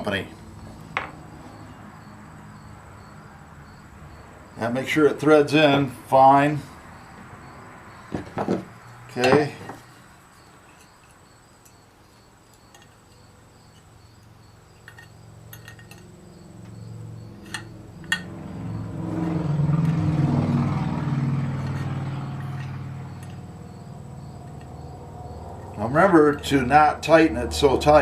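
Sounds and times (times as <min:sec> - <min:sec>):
vehicle passing: 0:00.2 - 0:10.5, 0:15.3 - 0:28.0
light metal clinks: 0:14.7 - 0:16.7, 0:17.3 - 0:18.4.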